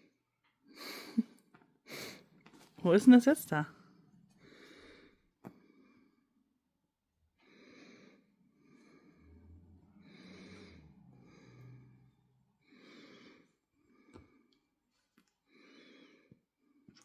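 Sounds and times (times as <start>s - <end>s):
slow soft breathing: 3.7s - 6.6s, 7.3s - 17.0s.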